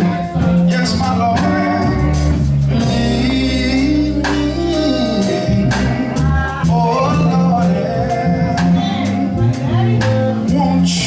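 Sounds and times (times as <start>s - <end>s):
live band playing: 0.0s - 11.0s
person singing: 0.0s - 11.0s.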